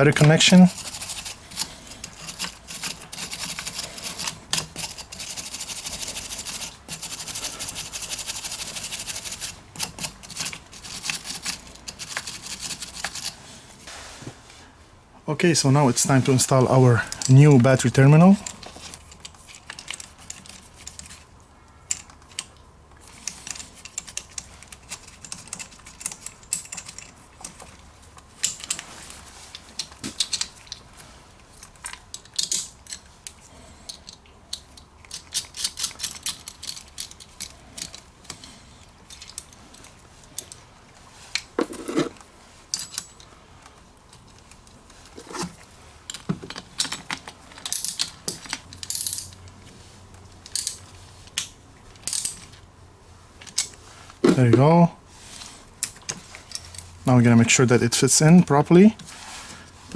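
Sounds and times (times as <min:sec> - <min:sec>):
metallic clicks and rattles: 0:21.8 - 0:28.9, 0:31.5 - 0:40.6, 0:46.1 - 0:49.6.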